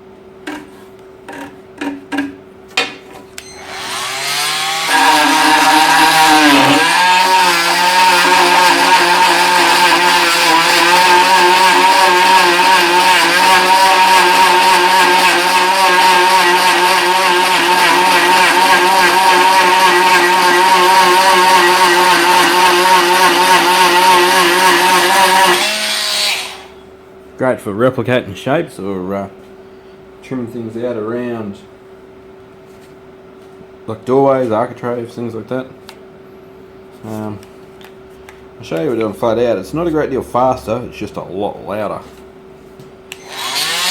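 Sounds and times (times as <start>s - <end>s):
oscillating multi-tool cutting: 3.4s - 26.8s, 43.1s - 43.9s.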